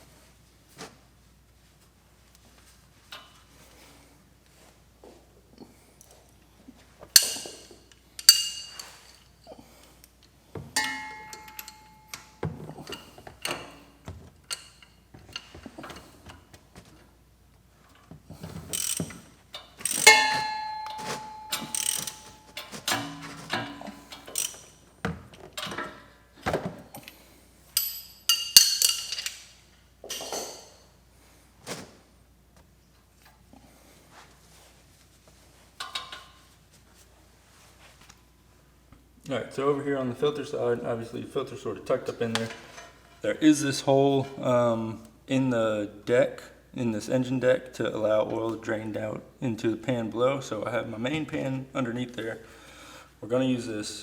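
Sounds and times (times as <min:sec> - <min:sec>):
metal tools clanking: 0:07.1 - 0:09.6, 0:10.7 - 0:16.4, 0:17.8 - 0:24.8.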